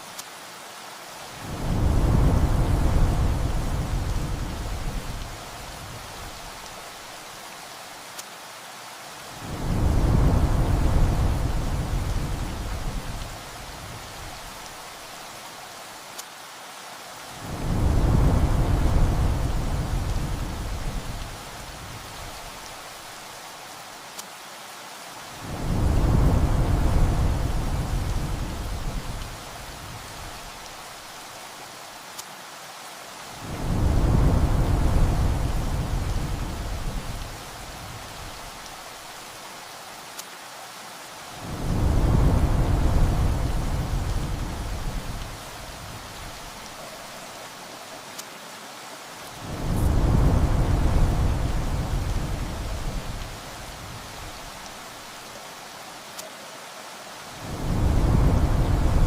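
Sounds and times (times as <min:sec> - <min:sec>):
heavy rain hissing: 0:00.0 - 0:59.0
thunder rumbling: 0:57.5 - 0:59.0.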